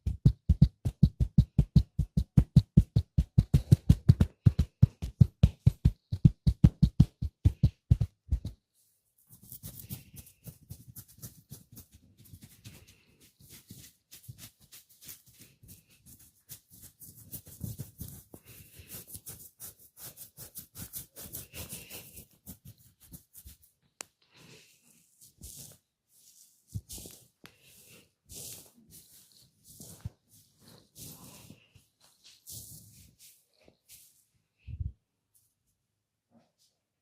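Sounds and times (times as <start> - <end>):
hands slapping and rubbing skin: 0.0 - 8.6, 9.3 - 24.2
percussive massage tapping: 0.0 - 8.6.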